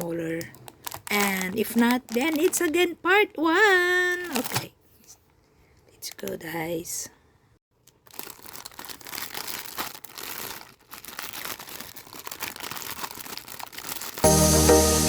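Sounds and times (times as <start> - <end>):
packaging crinkling and tearing: 0.3 - 2.9, 4.1 - 4.7, 7.8 - 14.3
background music: 14.2 - 15.0.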